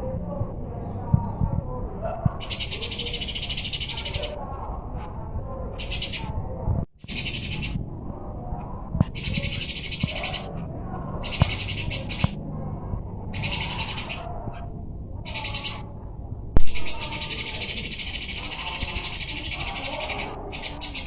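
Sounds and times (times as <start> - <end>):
songbird fighting chirps: 2.4 - 4.8, 5.8 - 6.4, 7.0 - 7.8, 9.0 - 10.6, 11.2 - 12.4, 13.3 - 14.7, 15.3 - 15.9, 16.6 - 21.0.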